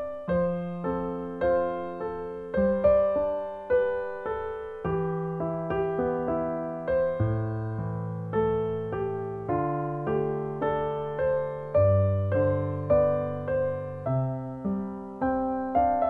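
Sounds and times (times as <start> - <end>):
slow gentle piano melody: 0.0 - 16.0.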